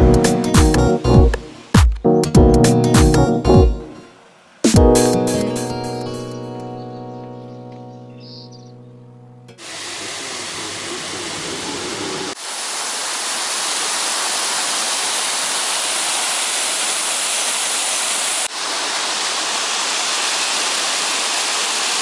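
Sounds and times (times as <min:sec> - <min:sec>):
waterfall rushing: 0:09.6 - 0:22.0.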